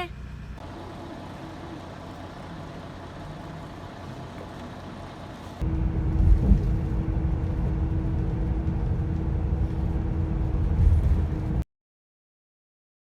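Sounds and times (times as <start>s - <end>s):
moving vehicle rumble: 0.0s - 11.6s.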